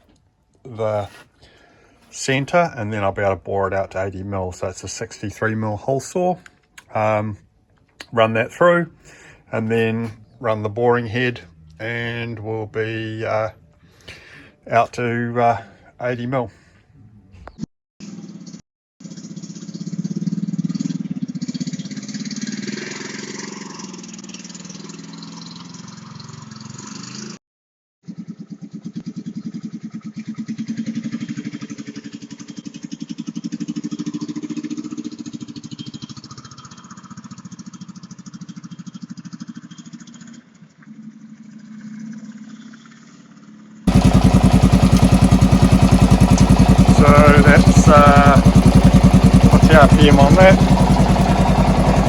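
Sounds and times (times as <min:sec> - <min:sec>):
motorcycle engine revving: 0:19.7 - 0:27.4, 0:28.4 - 0:39.8, 0:43.9 - 0:52.0.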